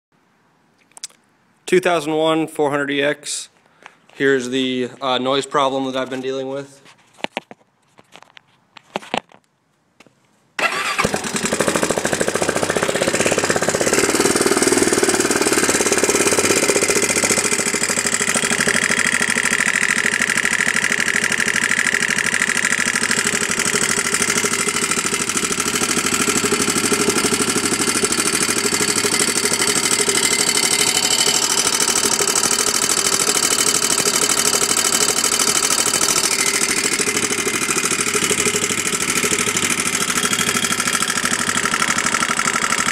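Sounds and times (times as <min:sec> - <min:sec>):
quad bike engine starting and running: 0:10.6 - 0:42.9.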